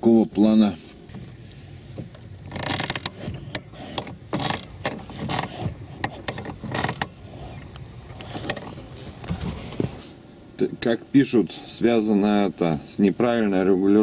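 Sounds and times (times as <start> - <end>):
clutch pedal squeaking: 2.0 - 9.6.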